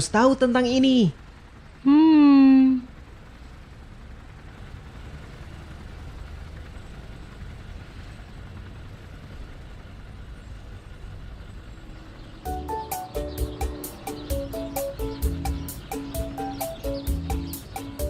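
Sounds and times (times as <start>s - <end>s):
cartoon engine rumble: 0.0s - 7.9s, 12.4s - 18.0s
plucky music cue with clicks: 12.5s - 18.0s.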